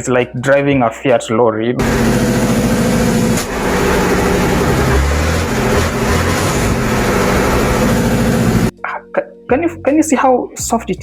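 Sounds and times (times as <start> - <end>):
heavy lorry engine running: 1.8 - 8.7.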